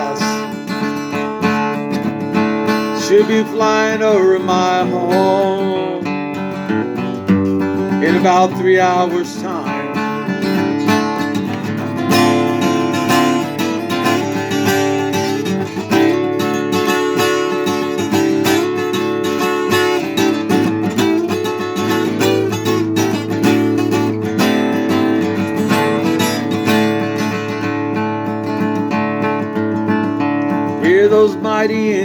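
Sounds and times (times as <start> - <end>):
acoustic guitar strumming: 0.0 - 32.0
person singing folk song: 0.0 - 32.0.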